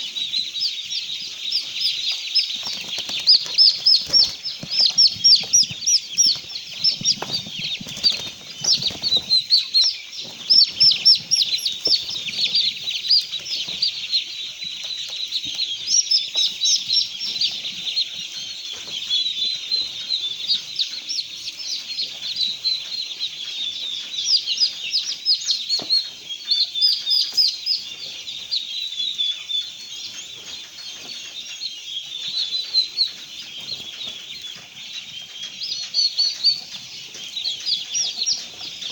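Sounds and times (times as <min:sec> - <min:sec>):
small birds chirping: 0:00.0 - 0:38.9
rustling and bumping: 0:02.6 - 0:09.6.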